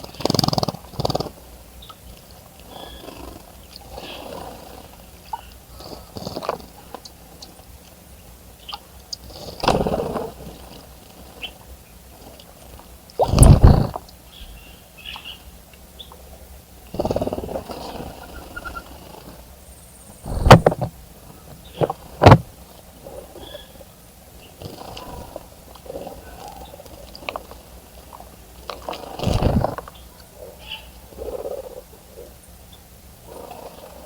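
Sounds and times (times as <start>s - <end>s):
birds splashing in water: 24.5s - 30.1s.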